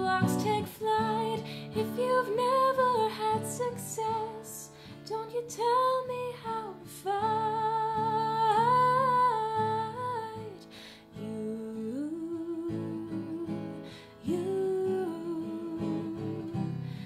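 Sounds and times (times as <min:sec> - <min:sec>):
strummed acoustic guitar: 0:00.0 - 0:17.0
woman singing: 0:00.0 - 0:17.0
breath: 0:01.4 - 0:01.8, 0:04.7 - 0:05.0, 0:10.6 - 0:11.2, 0:13.8 - 0:14.2, 0:16.8 - 0:17.0.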